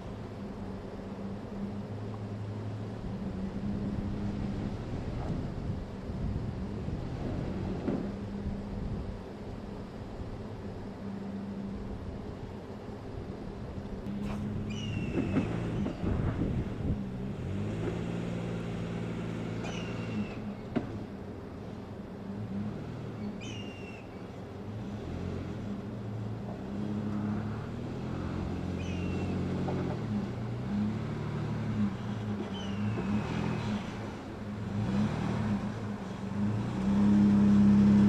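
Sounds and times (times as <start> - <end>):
engine running at low revs: 0.0 - 38.0
bird chirping: 14.4 - 16.1, 19.6 - 20.7, 23.2 - 24.4, 28.8 - 29.4, 32.4 - 33.2.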